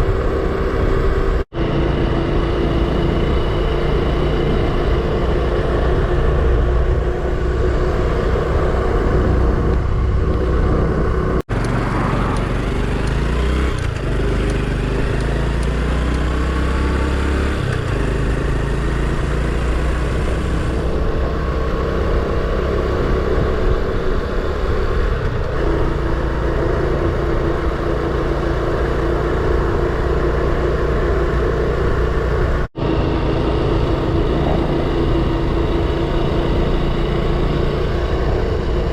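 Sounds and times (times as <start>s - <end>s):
motorcycle engine running: 0.0s - 38.9s
road noise: 0.0s - 38.9s.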